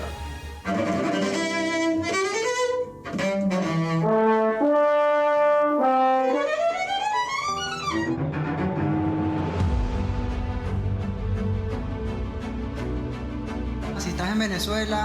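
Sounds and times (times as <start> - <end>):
brass playing melody: 0.0 - 8.0.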